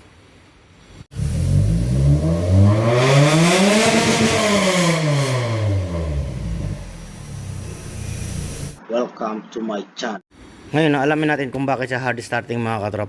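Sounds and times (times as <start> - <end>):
engine revving: 1.1 - 8.8.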